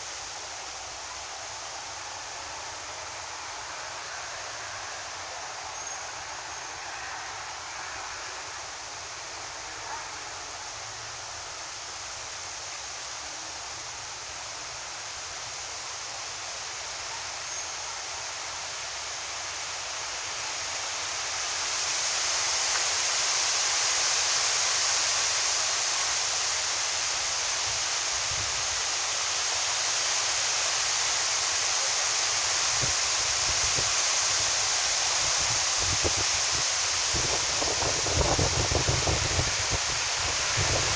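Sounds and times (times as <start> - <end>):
wind rushing through foliage: 0.0 - 40.9
wind buffeting microphone: 35.4 - 40.9.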